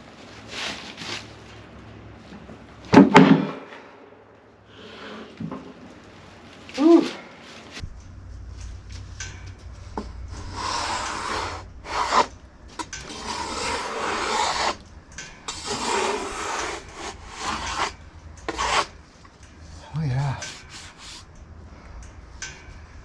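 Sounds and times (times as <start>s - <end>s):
steady low hum: 7.4s - 23.0s
scraping on wood: 8.6s - 19.8s, 20.4s - 21.3s.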